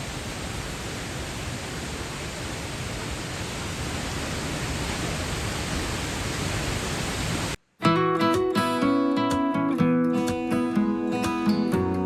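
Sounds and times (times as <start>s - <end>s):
waterfall rushing into pool: 0.0s - 7.6s.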